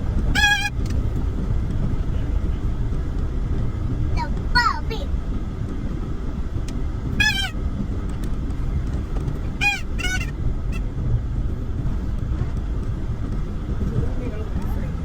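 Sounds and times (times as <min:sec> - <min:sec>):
low rumble: 0:00.0 - 0:15.0
honking calls: 0:00.3 - 0:00.8, 0:07.1 - 0:07.6, 0:09.5 - 0:10.9.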